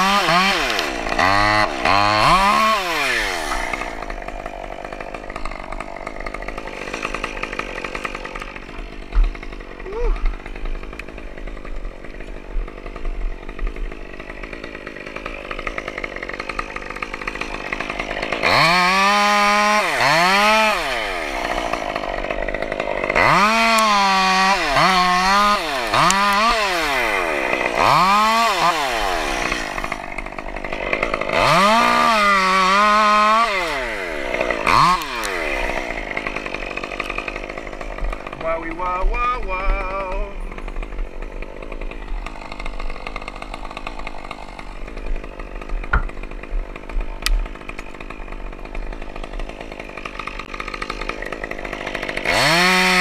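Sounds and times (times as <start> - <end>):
chainsaw idling: 0.0 - 53.0
chainsaw revving cutting wood: 0.0 - 53.0.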